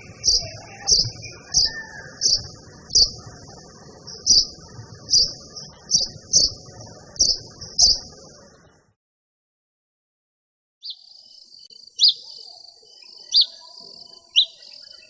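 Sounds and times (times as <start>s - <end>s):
small bird chirping: 0.0s - 8.7s, 10.8s - 15.0s
faint low rumble: 0.0s - 9.0s.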